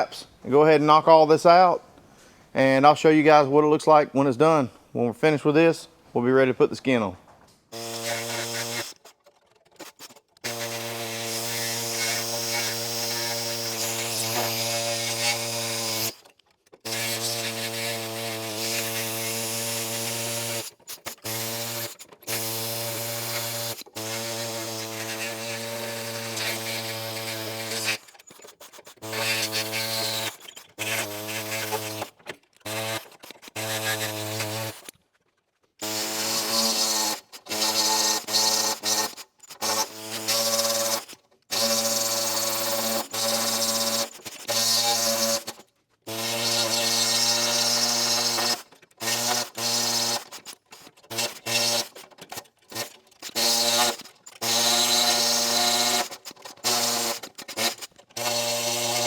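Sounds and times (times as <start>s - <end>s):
welding buzz with hiss: 7.7s - 9.0s, 10.4s - 16.2s, 16.9s - 28.0s, 28.8s - 32.1s.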